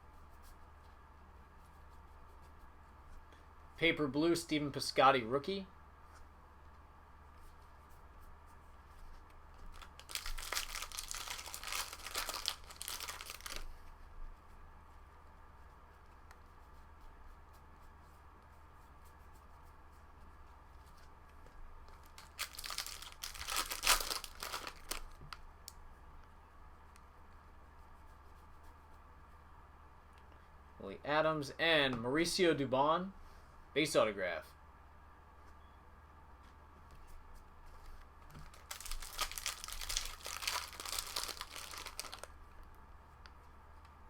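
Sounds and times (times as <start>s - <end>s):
foil wrapper crinkling and tearing: 9.7s - 13.8s, 22.0s - 25.4s, 38.4s - 42.3s.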